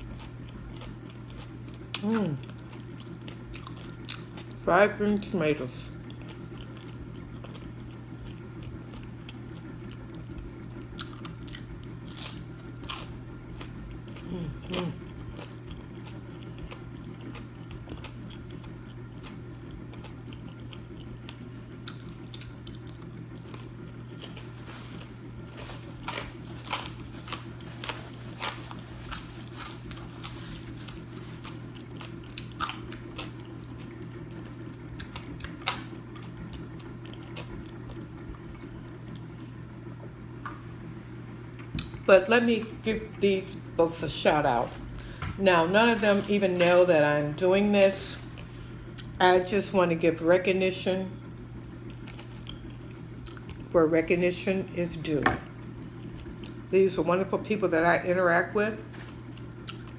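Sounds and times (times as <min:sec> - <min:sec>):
chewing crunchy food: 0:00.0 - 0:39.6, 0:47.9 - 0:49.6, 0:51.3 - 0:53.8, 0:55.5 - 0:56.7, 0:58.9 - 0:59.9.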